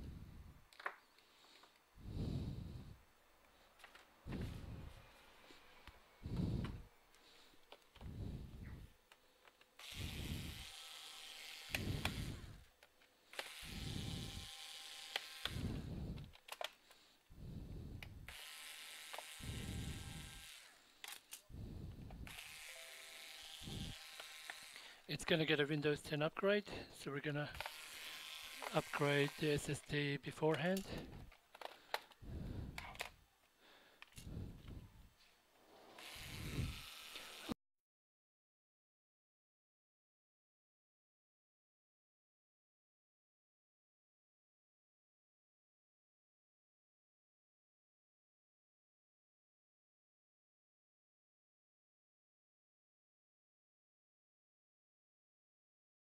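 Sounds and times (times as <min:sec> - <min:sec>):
small motor running: 0:09.8 - 0:12.6, 0:13.4 - 0:16.2, 0:18.3 - 0:20.9, 0:22.2 - 0:25.0, 0:27.6 - 0:29.8, 0:36.0 - 0:37.6.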